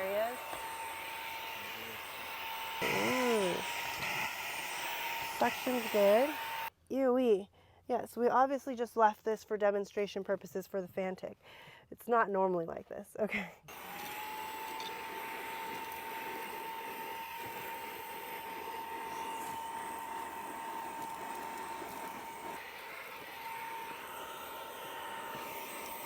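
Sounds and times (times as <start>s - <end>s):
handheld vacuum motor whine: 0.0s - 6.7s, 13.7s - 26.0s.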